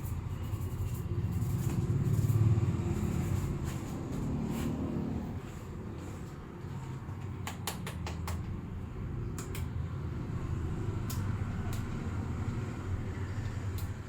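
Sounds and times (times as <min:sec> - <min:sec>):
sharp clicks and taps: 0:07.4 - 0:08.6, 0:09.4 - 0:09.7.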